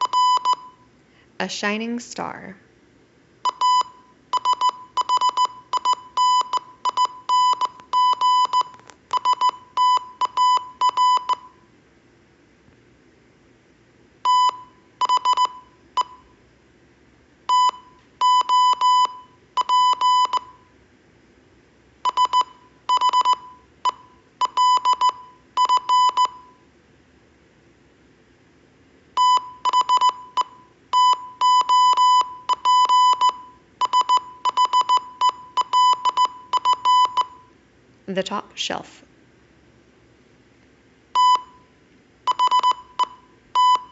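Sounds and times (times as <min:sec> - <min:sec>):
morse code beeps: 0:00.0 - 0:00.8, 0:03.4 - 0:11.6, 0:14.3 - 0:16.3, 0:17.5 - 0:20.7, 0:22.0 - 0:26.6, 0:29.2 - 0:37.5, 0:41.2 - 0:41.7, 0:42.3 - 0:43.9.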